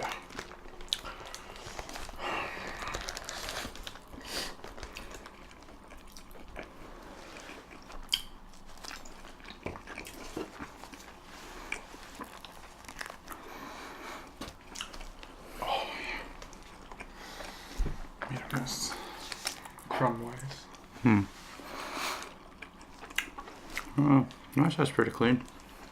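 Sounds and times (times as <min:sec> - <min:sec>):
chewing and biting food: 0:00.0 - 0:15.4, 0:16.2 - 0:17.8, 0:22.2 - 0:24.5.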